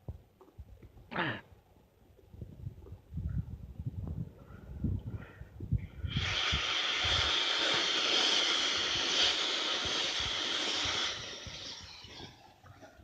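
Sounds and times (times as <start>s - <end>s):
compressed air hissing from valve: 5.9s - 12.5s.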